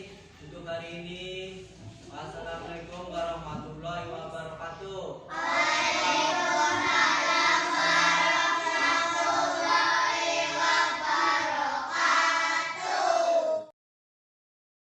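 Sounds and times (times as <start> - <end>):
children chanting in unison: 5.3 - 13.7.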